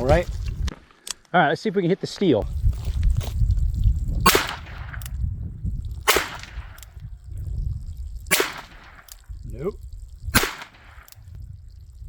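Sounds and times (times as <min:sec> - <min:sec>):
revolver shots: 0:04.2 - 0:05.1, 0:06.1 - 0:06.8, 0:08.3 - 0:09.2, 0:10.3 - 0:11.2.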